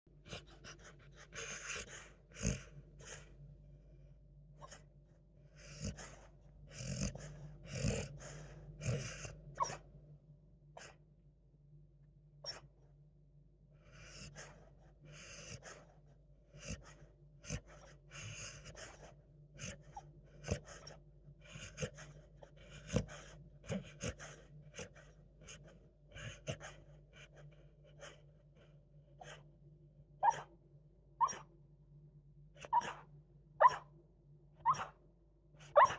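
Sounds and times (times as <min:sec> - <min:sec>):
dog snoring: 0:00.2 - 0:03.3, 0:04.6 - 0:09.8, 0:13.8 - 0:29.4
dog snorting: 0:00.2 - 0:03.3, 0:05.6 - 0:09.8, 0:13.9 - 0:29.4, 0:32.6 - 0:33.0.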